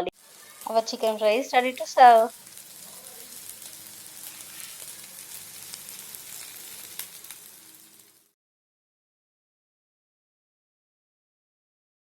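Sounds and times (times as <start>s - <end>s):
chicken sizzling in oil: 0.0s - 8.4s.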